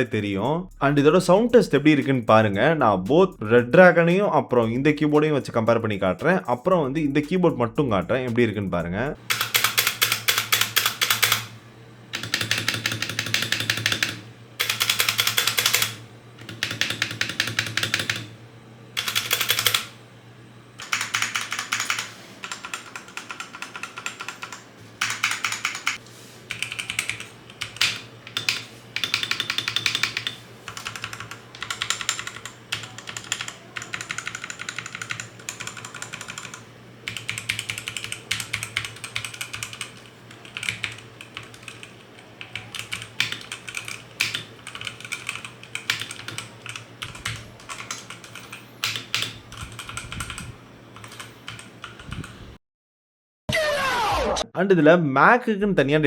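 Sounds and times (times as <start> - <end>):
mechanical keyboard typing: 9.3 - 11.5, 12.1 - 18.3, 19.0 - 20.0, 20.8 - 52.4.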